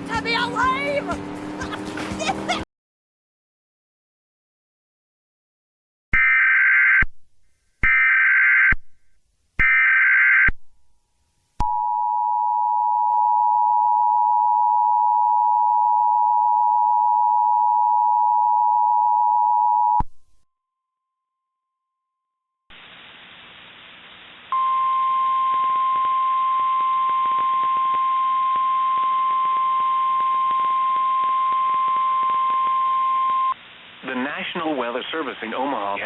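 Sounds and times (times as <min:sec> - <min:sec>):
two-tone attention signal: 0:24.6 - 0:33.6.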